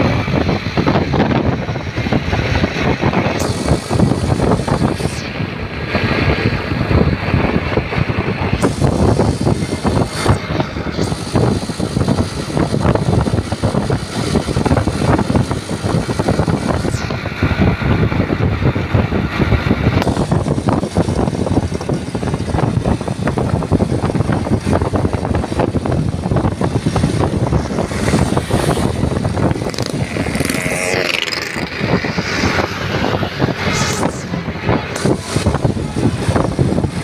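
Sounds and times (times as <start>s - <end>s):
bus engine rumbling: 0.0s - 37.0s
brief high sliding sounds: 29.7s - 35.6s.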